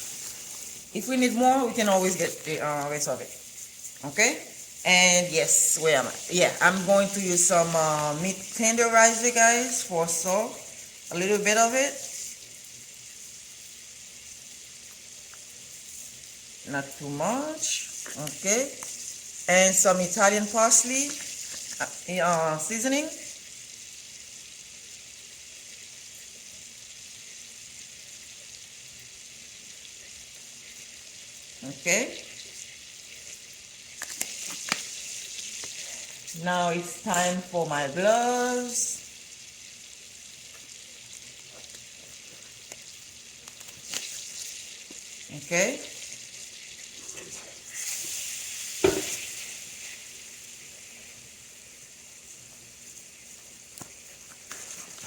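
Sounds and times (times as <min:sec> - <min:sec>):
butter sizzling in hot pan: 0:00.0 - 0:55.0.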